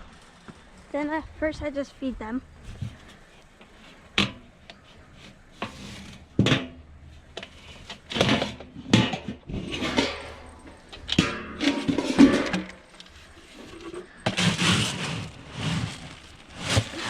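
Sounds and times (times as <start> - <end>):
feed clattering into feeders: 7.8 - 17.0
feed rustling swishes: 14.4 - 17.0.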